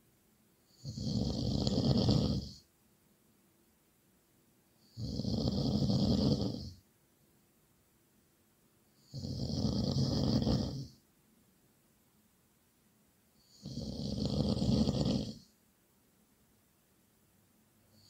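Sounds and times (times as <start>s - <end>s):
loud snoring: 0.7s - 2.6s, 4.8s - 6.8s, 9.0s - 11.0s, 13.4s - 15.5s
quiet breathing: 17.7s - 18.0s.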